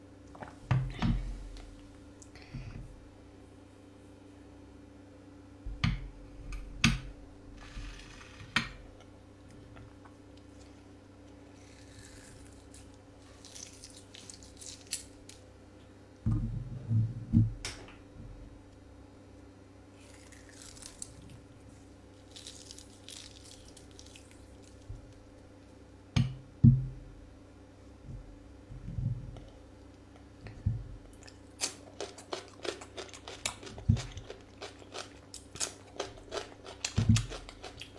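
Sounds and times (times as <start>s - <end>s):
faint hum: 0.0s - 37.9s
person eating: 11.5s - 15.1s, 20.0s - 24.8s, 31.1s - 37.9s.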